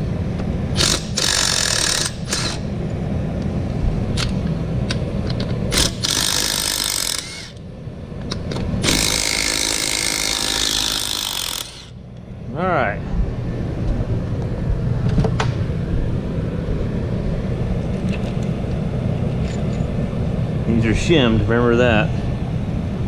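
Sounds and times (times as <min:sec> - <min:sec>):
steady low rumble: 0:00.0 - 0:01.3, 0:02.1 - 0:09.4, 0:11.6 - 0:23.0
impact wrench hammering: 0:00.8 - 0:02.6, 0:05.7 - 0:07.6, 0:08.8 - 0:12.0.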